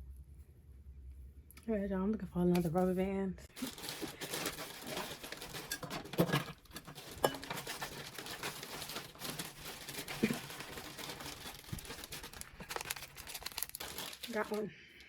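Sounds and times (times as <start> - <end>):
hands rummaging through small objects: 3.5 - 14.6.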